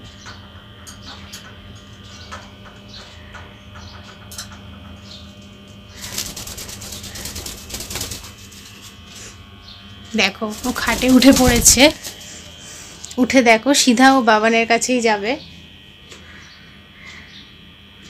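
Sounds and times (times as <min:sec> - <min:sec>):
bird claws clicking: 0:06.0 - 0:08.5
bedsheet rustling: 0:10.5 - 0:12.2.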